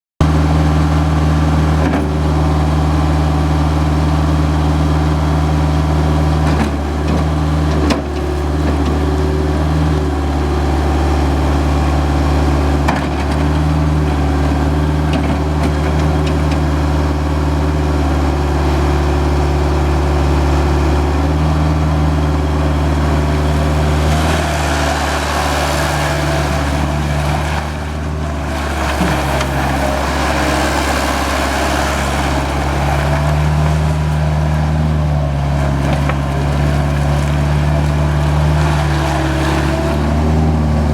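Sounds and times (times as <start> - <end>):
skid steer loader engine running: 0.2 - 40.9.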